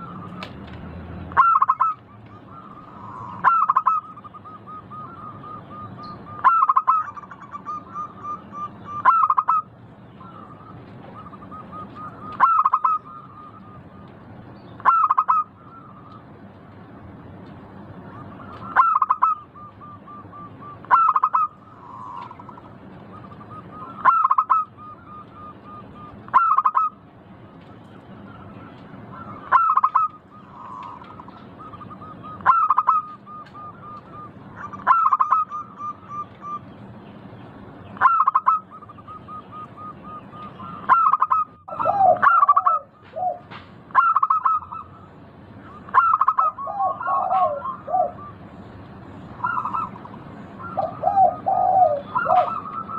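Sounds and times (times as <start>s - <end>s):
dove cooing: 1.4s - 14.1s, 18.1s - 27.0s, 28.2s - 36.6s, 38.0s - 48.4s, 49.3s - 52.9s.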